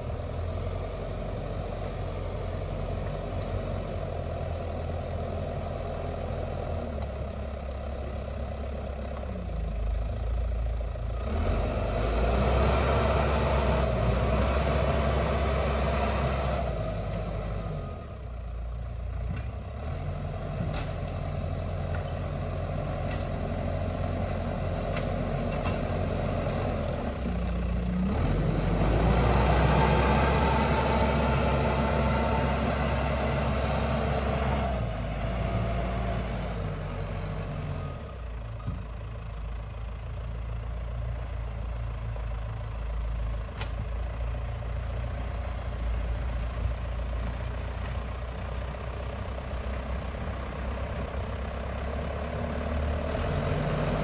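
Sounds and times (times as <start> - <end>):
diesel engine running: 0.0 - 54.0.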